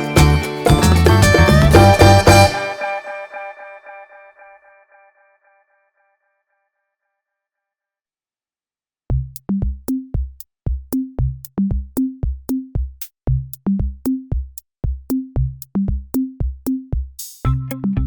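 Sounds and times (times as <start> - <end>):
bass line: 0.0 - 2.7, 9.1 - 10.3, 10.9 - 12.7, 13.3 - 14.4, 15.1 - 18.0
electronic drum machine beat: 0.0 - 2.8, 9.1 - 18.0.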